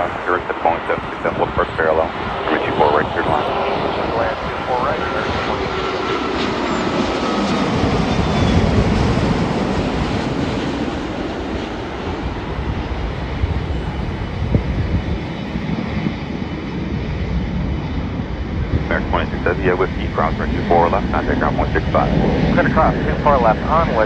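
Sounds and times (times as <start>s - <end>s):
jet engines roaring: 0.0s - 24.0s.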